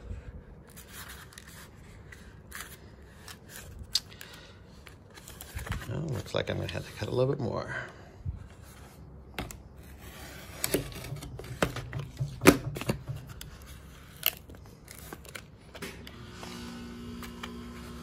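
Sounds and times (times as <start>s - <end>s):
packaging rustling: 0.6s - 7.1s, 9.4s - 15.8s.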